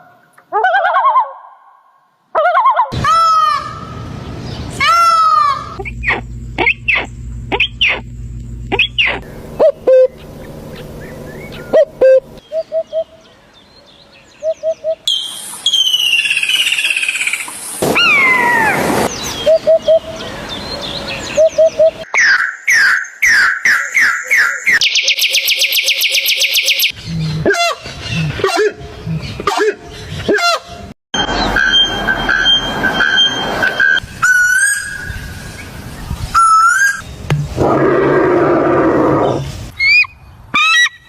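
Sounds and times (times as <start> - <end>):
bird calls: 4.4 - 35.8
fast bird trill: 5.8 - 8.0, 8.7 - 13.1, 22.2 - 27.3.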